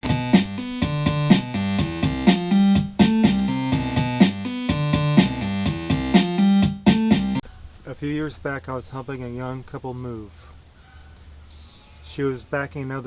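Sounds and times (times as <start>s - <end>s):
keyboard chords: 0.0s - 7.4s
regular drum beat: 0.0s - 7.4s.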